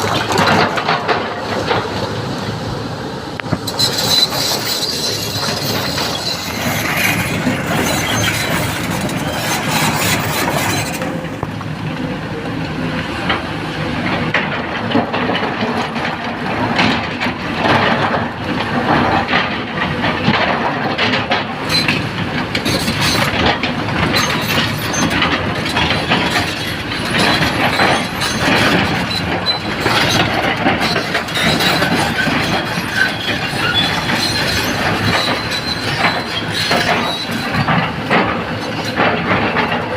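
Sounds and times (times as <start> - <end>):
metal clanks and knocks: 0.0 - 2.1, 13.2 - 39.9
excavator engine running: 0.0 - 39.9.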